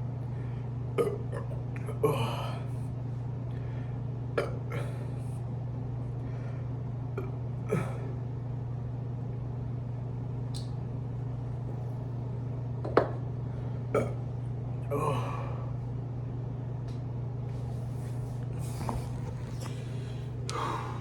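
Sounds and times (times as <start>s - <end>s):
steady low hum: 0.0s - 21.0s
person's sharp throat sounds: 1.0s - 2.7s, 4.4s - 5.2s, 7.2s - 8.2s, 13.9s - 15.7s.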